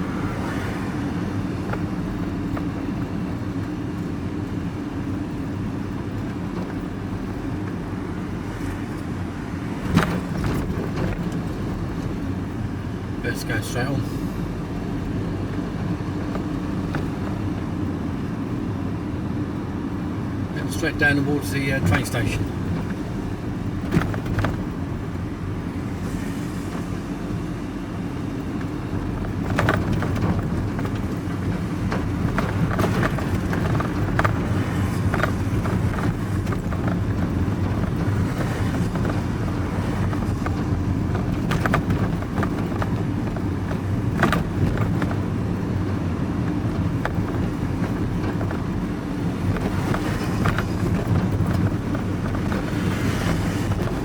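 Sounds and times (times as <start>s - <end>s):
engine and road hum: 0.0s - 54.0s
knocks and rattles: 21.8s - 24.9s, 28.6s - 54.0s.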